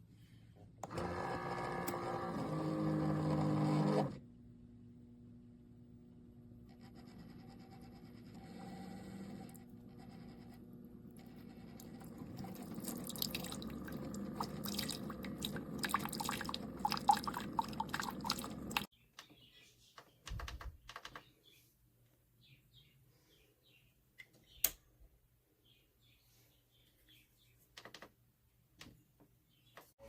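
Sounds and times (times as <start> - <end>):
coffee maker humming: 0.8 - 4.2, 8.4 - 18.9
liquid dripping into a cup: 12.0 - 18.9.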